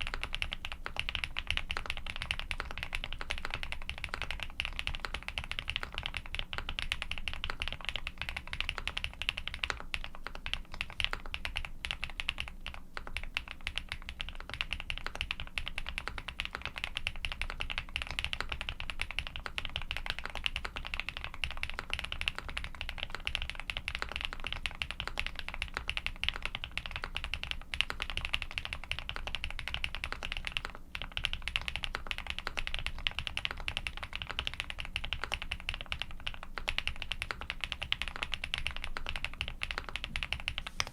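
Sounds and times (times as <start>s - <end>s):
mechanical keyboard typing: 0.0s - 40.9s.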